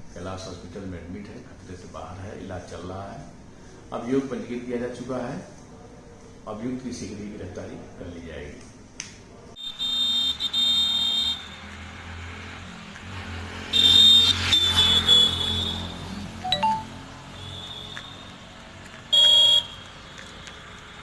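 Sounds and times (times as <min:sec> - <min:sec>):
road traffic: 0:09.6 - 0:21.0
vehicle horn honking: 0:13.8 - 0:16.8, 0:19.1 - 0:19.8.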